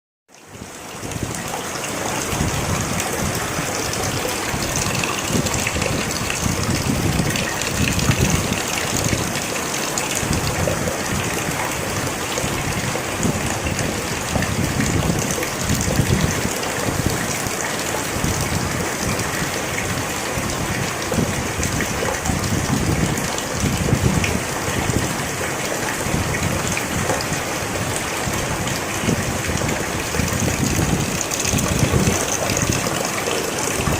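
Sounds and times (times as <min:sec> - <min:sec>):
steady rain falling: 0:00.3 - 0:33.9.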